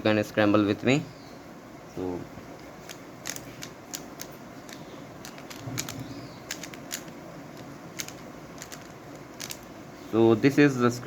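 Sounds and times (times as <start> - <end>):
puzzle cube plastic clicks: 2.8 - 9.7.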